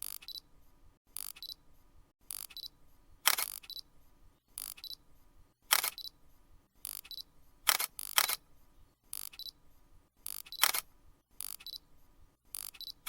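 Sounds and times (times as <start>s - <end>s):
insect clicking calls: 1.2s - 1.6s, 2.3s - 2.7s, 4.5s - 5.0s, 6.8s - 8.4s, 9.1s - 9.6s, 10.2s - 10.8s, 11.4s - 11.8s, 12.5s - 13.0s.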